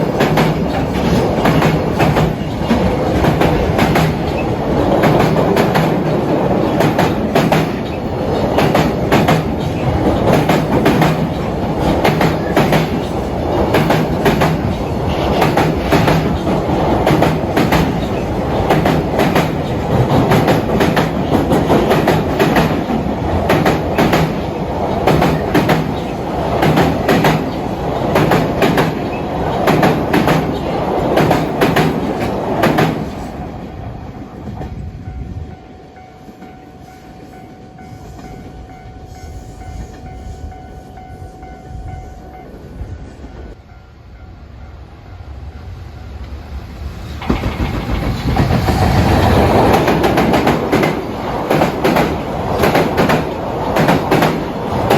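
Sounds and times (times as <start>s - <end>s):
train wheels clattering: 0.0s - 33.4s, 46.9s - 54.9s.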